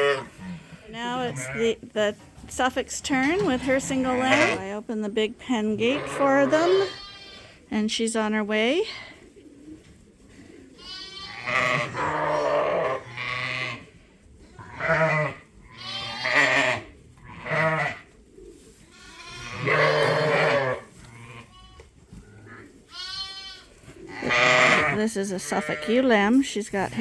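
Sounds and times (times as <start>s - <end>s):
sheep bleating: 5.8s - 7.4s, 10.8s - 13.8s, 14.6s - 18.0s, 18.9s - 21.8s, 22.9s - 26.0s.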